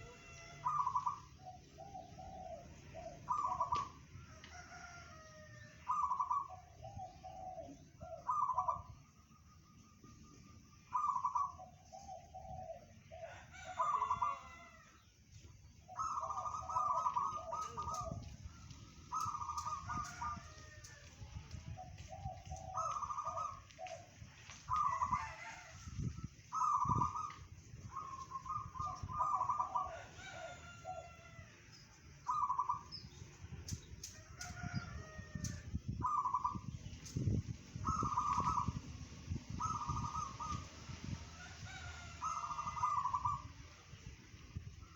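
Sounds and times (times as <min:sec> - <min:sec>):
dove cooing: 0:00.0 - 0:05.0, 0:05.8 - 0:09.0, 0:10.1 - 0:14.7, 0:15.8 - 0:25.8, 0:26.5 - 0:31.4, 0:32.2 - 0:33.1, 0:36.0 - 0:36.8, 0:37.8 - 0:43.6
other birds calling: 0:00.0 - 0:44.9.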